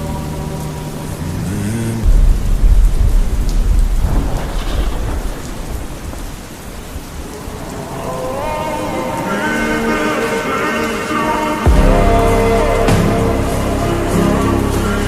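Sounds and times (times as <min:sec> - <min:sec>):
steady rain: 0:00.0 - 0:15.0
thunder rumble: 0:02.0 - 0:09.9
music: 0:09.4 - 0:15.0.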